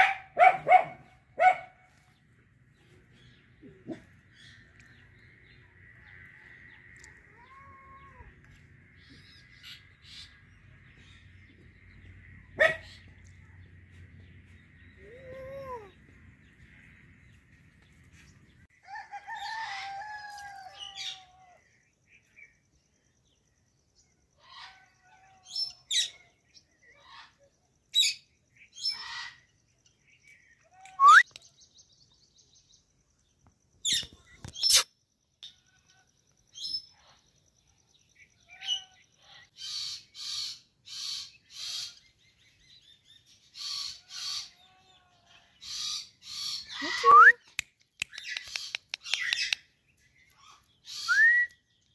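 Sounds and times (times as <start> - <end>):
parrot wavering call: 30.9 - 31.2.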